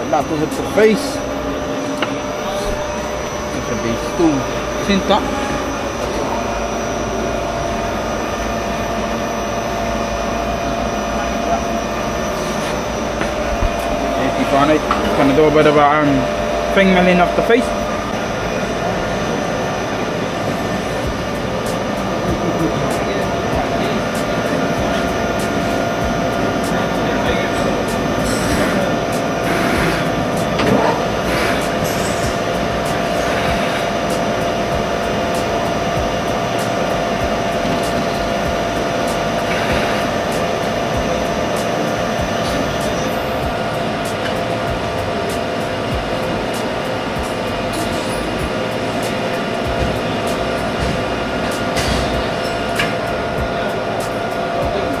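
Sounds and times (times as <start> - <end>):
milling machine whirring: 0.0 - 55.0.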